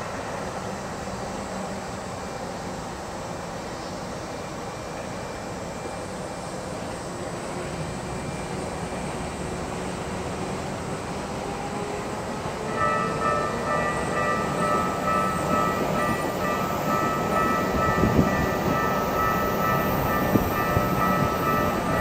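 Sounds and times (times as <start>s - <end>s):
street noise: 0.0s - 22.0s
level crossing warning bell ringing: 11.6s - 22.0s.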